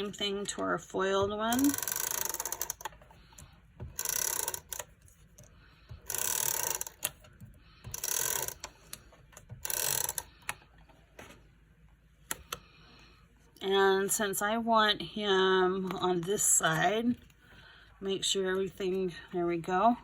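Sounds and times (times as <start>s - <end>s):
tape runner ratcheting zip: 1.5s - 5.4s, 6.0s - 7.3s, 7.9s - 9.0s, 9.6s - 10.5s.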